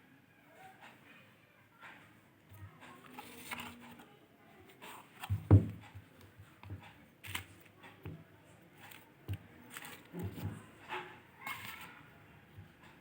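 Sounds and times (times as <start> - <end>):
packages rustling and tapping: 2.5 - 4.1, 4.7 - 8.2, 8.8 - 12.0
box thump: 5.2 - 5.9.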